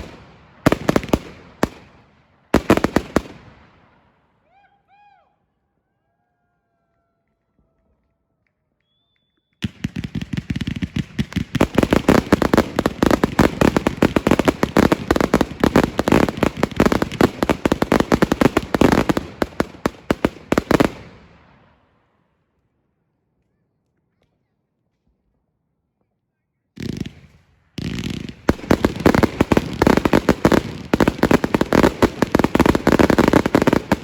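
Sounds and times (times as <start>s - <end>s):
firework barrage bangs: 26.8s - 34.0s.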